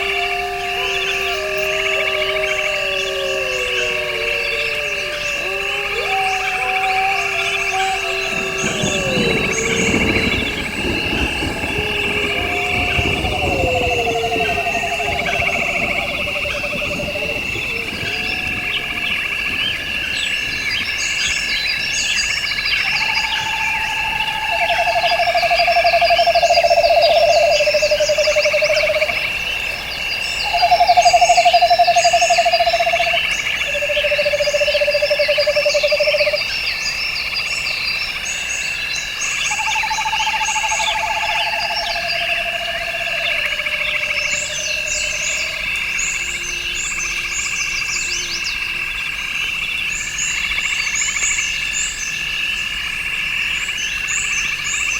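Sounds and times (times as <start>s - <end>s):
insects chirping: 0.0s - 54.9s.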